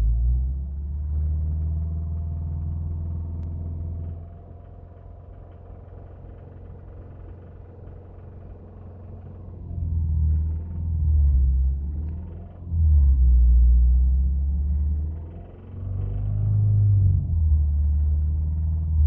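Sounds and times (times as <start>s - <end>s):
car engine knocking: 1.1s - 12.7s.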